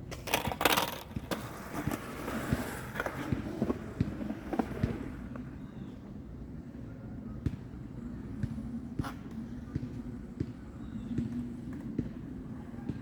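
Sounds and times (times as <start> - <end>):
skateboard wheels rolling on concrete: 0.0 - 13.0
skateboard clacks: 0.1 - 5.2.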